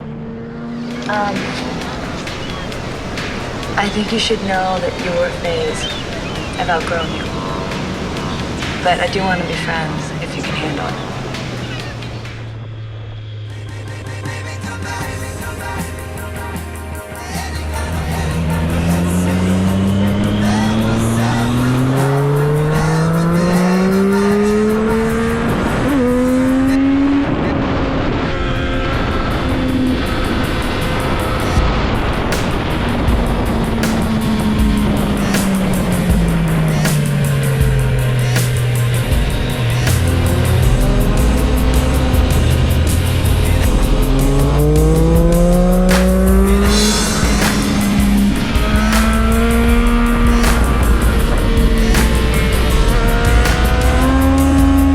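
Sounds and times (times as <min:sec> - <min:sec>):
motorcycle engine accelerating: 0:00.0 - 0:03.9, 0:17.6 - 0:54.9
music playing: 0:00.7 - 0:12.6, 0:13.5 - 0:27.8, 0:28.4 - 0:54.9.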